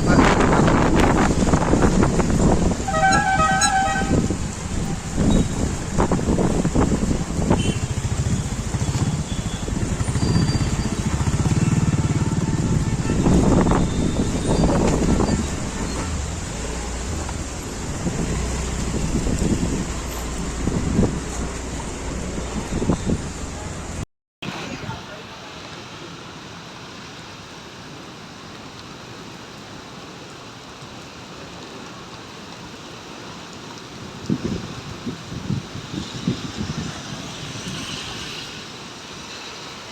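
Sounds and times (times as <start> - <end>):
heavy rain falling: 0.0 - 39.9
faint raindrop ticks: 28.4 - 29.6, 30.3 - 34.5.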